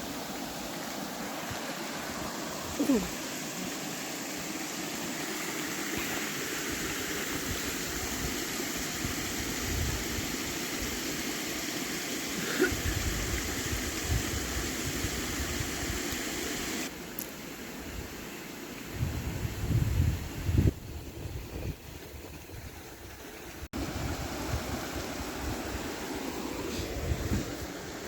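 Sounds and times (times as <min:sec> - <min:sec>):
flowing water rushing: 0:00.0 - 0:19.0, 0:21.0 - 0:28.0
wind buffeting microphone: 0:18.9 - 0:25.8.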